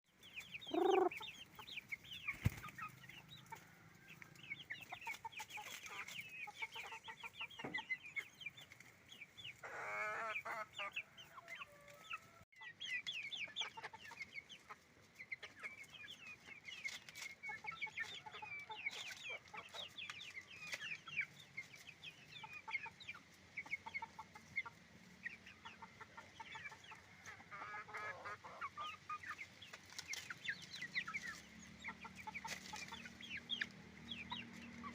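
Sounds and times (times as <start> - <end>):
chickens clucking: 0.1 - 34.9
high overlapping chirps: 0.5 - 3.4.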